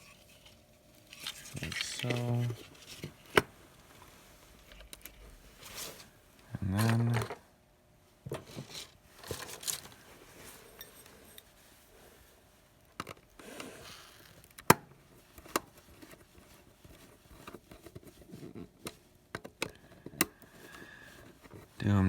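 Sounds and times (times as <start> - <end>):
hands handling wires: 0.0 - 7.4, 8.2 - 11.9.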